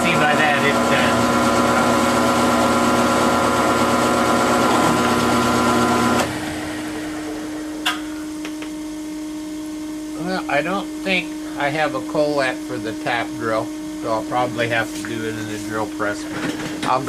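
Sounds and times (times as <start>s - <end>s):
mill motor whining: 0.0s - 17.0s.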